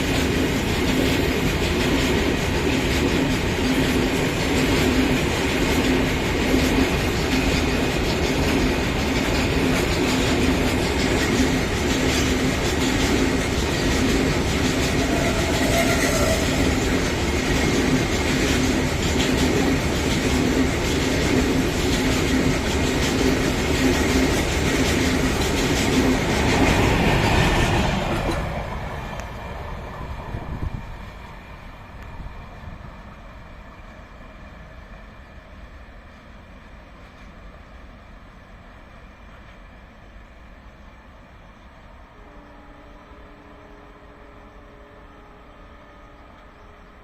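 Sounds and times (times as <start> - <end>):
train wheels clattering over rail joints: 0.0 - 29.4.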